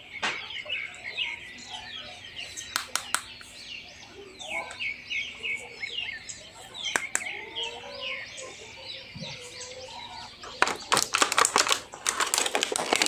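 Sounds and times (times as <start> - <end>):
birds chirping: 0.0 - 13.0
handling noise clicks: 6.9 - 7.3.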